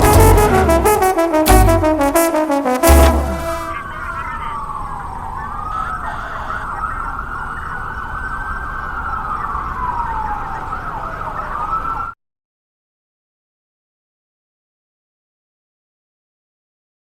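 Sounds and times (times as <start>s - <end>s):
siren wailing: 0.0s - 12.1s.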